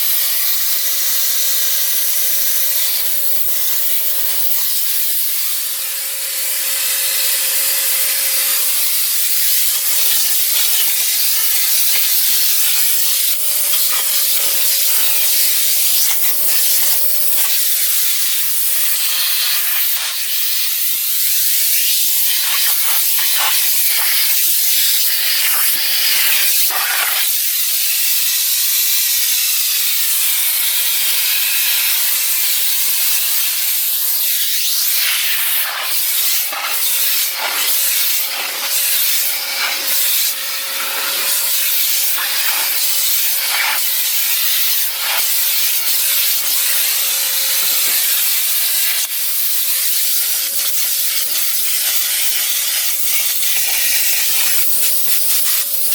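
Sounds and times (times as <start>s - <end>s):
vacuum cleaner motor whine: 3.7s - 18.0s, 36.2s - 48.2s.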